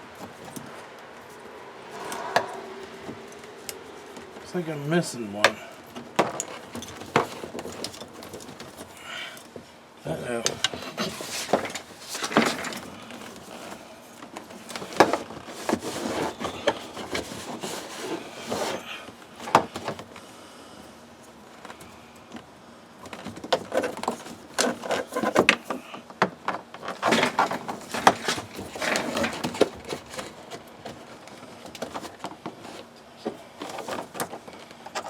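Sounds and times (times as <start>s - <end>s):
plastic parts rubbing and rattling: 5.4s - 9.0s, 10.5s - 20.1s, 23.0s - 25.8s, 26.5s - 35.0s.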